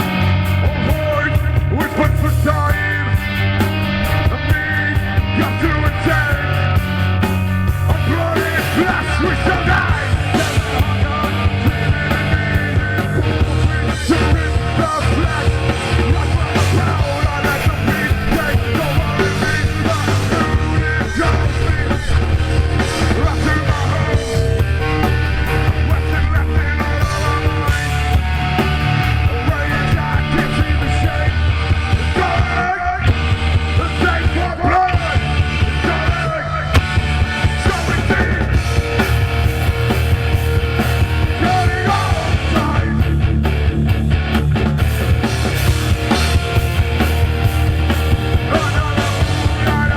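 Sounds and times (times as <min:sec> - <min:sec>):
live punk rock band: 0:00.0 - 0:49.9
person singing and shouting: 0:00.7 - 0:38.7, 0:41.2 - 0:43.2, 0:48.4 - 0:49.9.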